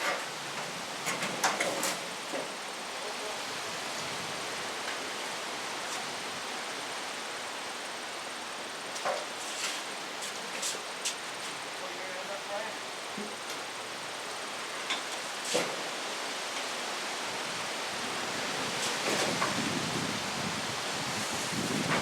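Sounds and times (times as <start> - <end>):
rain hissing: 0.0 - 22.0.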